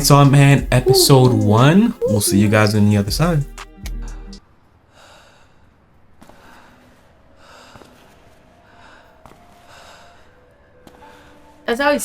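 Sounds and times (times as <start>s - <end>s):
faint slow breathing: 4.8s - 11.6s.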